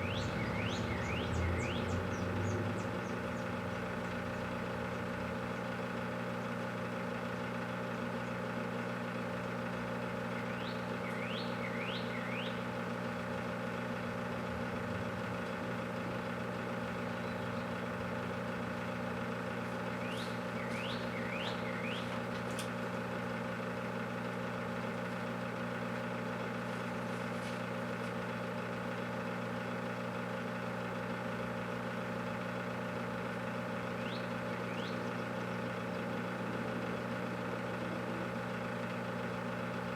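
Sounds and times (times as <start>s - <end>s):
high downward chirps: 0.0s - 3.4s
microwave oven humming: 0.0s - 39.9s.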